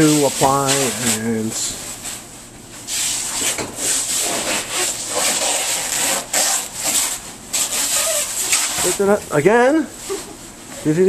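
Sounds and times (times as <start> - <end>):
plastic wrapping rasping: 0.0 - 1.6, 3.4 - 9.2.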